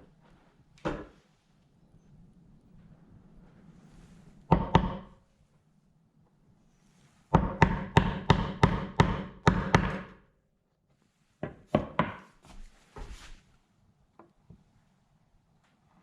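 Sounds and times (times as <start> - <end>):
hard tool knocking on wood: 7.4 - 10.1, 11.4 - 12.3.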